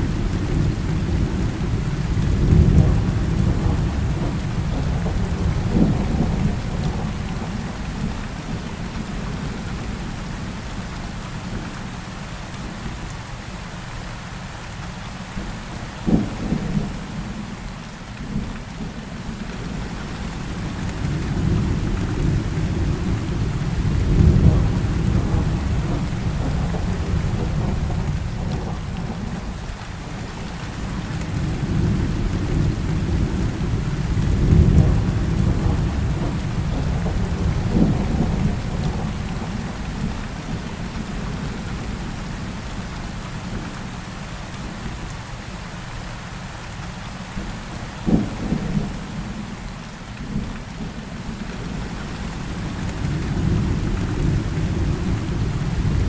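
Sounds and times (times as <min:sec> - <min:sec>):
low rolling thunder: 0:00.0 - 0:09.9, 0:19.7 - 0:42.8, 0:48.0 - 0:49.5, 0:50.2 - 0:56.0
heavy rain falling: 0:00.0 - 0:56.0.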